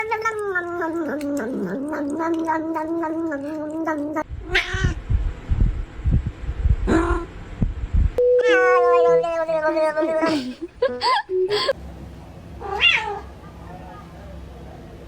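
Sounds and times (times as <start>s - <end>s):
cat meowing: 8.4s - 10.3s, 12.6s - 13.2s
cat yowling: 12.6s - 13.2s.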